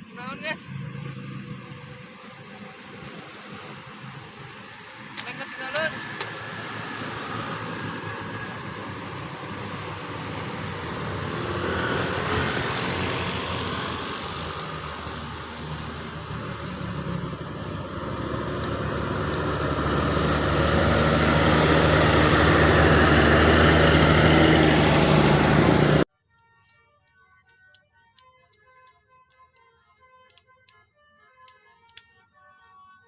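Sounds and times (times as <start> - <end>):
diesel engine approaching: 0.0 - 26.1
road noise: 0.0 - 26.1
vehicle passing: 0.0 - 26.1.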